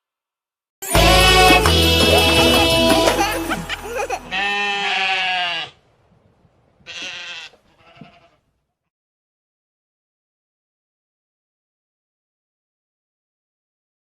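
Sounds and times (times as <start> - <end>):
children's song music: 0.8 - 5.0
animal bleating: 4.2 - 5.8, 6.8 - 8.5.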